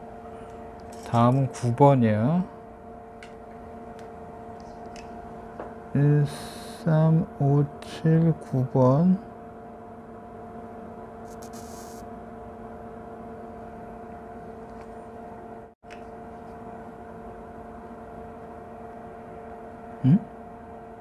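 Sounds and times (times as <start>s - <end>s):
electrical hum: 0.0s - 21.0s
short higher hiss: 11.3s - 12.0s.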